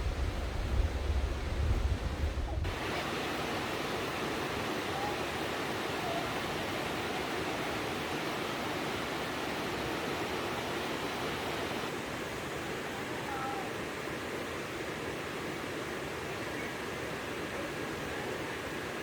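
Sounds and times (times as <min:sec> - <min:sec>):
stream water rushing: 0:00.0 - 0:19.0
faint high wavering calls: 0:02.7 - 0:10.8, 0:12.9 - 0:13.8, 0:16.3 - 0:17.0.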